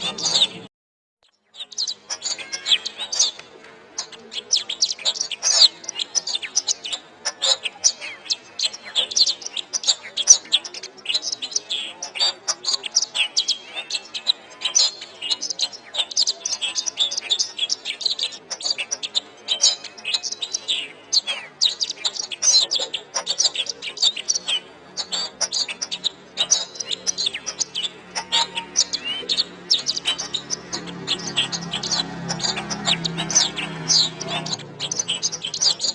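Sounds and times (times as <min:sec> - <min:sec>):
canary singing: 0:00.0 - 0:35.9.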